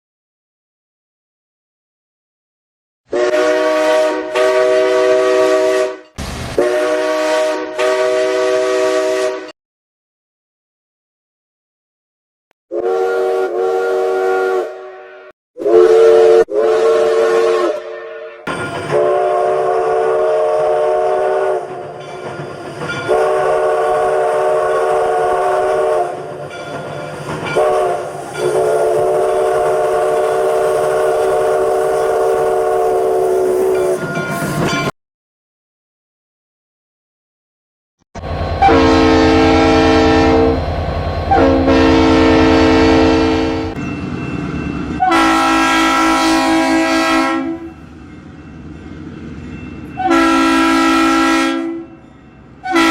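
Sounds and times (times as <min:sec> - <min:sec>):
train horn blasts: 0:03.1 - 0:09.6, 0:12.7 - 0:21.7, 0:23.0 - 0:26.2, 0:27.6 - 0:34.0, 0:38.2 - 0:43.8, 0:45.0 - 0:47.8, 0:50.0 - 0:52.0, 0:52.6 - 0:52.9
train rumble: 0:06.1 - 0:07.3, 0:18.5 - 0:34.9, 0:38.2 - 0:52.9.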